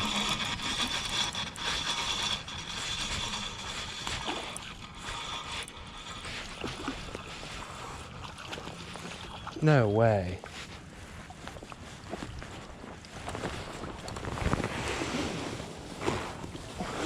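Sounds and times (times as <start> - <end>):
fishing reel whirring and clicking: 0.0 - 7.6.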